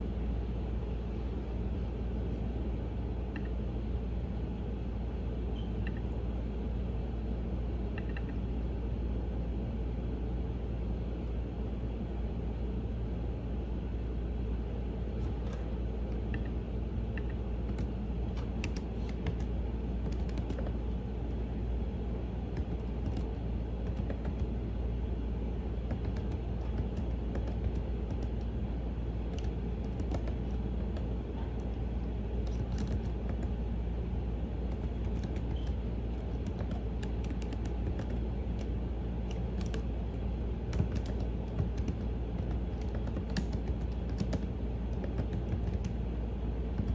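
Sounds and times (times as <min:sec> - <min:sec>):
steady low rumble: 0:00.0 - 0:46.9
keyboard key clicks: 0:39.3 - 0:46.0.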